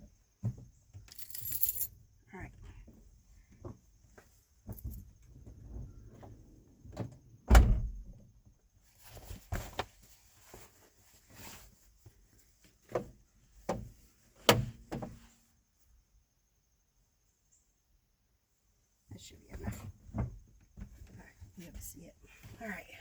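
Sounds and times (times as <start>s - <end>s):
clunks and knocks in a van: 0.0s - 1.1s, 2.6s - 8.6s, 12.8s - 15.4s, 19.5s - 22.0s
scuffing and rustling: 8.9s - 13.2s.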